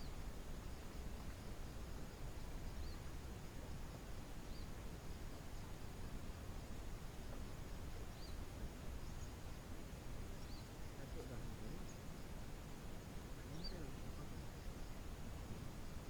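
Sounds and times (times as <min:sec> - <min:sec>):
faint outdoor background hum: 0:00.0 - 0:16.0.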